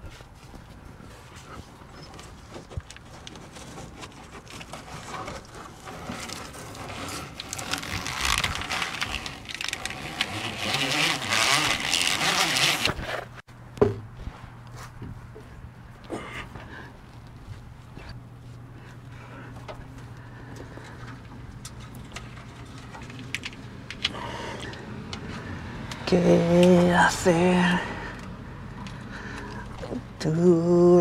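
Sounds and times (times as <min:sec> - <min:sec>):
plastic tubing crackling: 0:02.2 - 0:13.4, 0:20.8 - 0:27.2.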